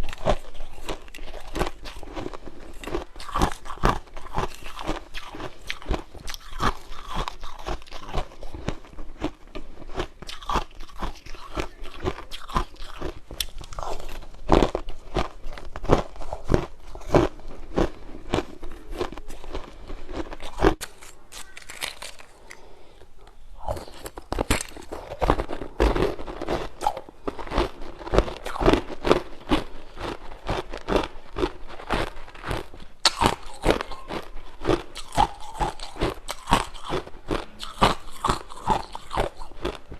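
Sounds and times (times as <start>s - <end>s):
crisp crunches and clicks: 10.2s - 22.7s, 23.6s - 39.9s.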